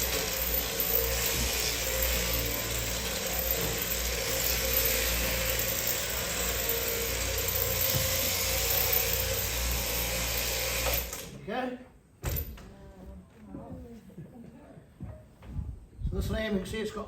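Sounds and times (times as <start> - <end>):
electric shearing handpiece running: 0.0 - 11.3.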